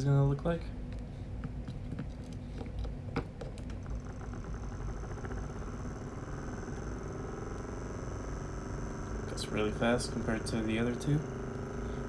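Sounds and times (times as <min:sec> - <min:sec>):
motor buzzing: 0:03.6 - 0:12.0
thin high whine: 0:03.8 - 0:12.0.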